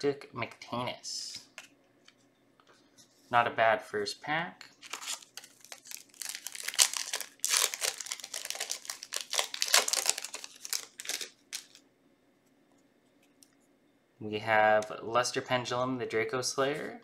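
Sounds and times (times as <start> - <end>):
foil wrapper crinkling and tearing: 4.8 - 11.8.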